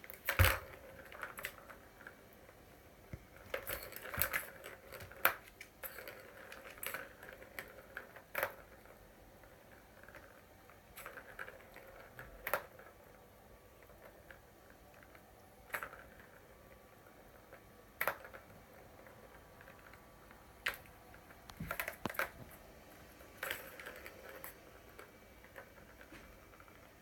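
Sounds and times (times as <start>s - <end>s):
cat toy clicking and clinking: 18.0s - 26.9s.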